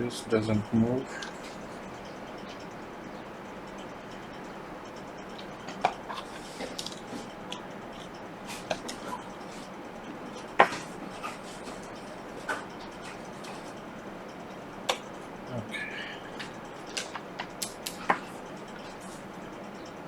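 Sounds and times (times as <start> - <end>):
small tools clicking and tapping: 5.3 - 9.3, 16.4 - 18.9.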